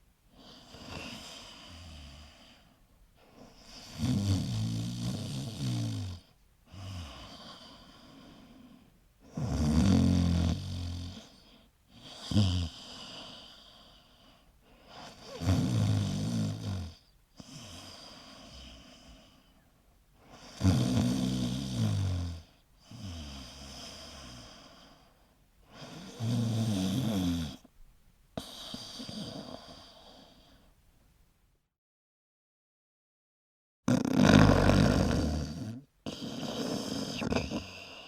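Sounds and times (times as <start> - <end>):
loud snoring: 3.5 - 8.0, 9.3 - 11.4, 12.0 - 13.6, 14.9 - 19.0, 20.3 - 24.9, 25.7 - 27.7, 28.4 - 30.3, 33.9 - 38.0.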